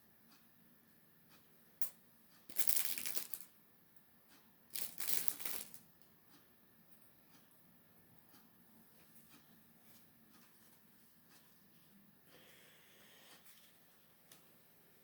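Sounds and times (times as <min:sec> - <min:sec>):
cd packaging rustling: 0:04.8 - 0:05.8.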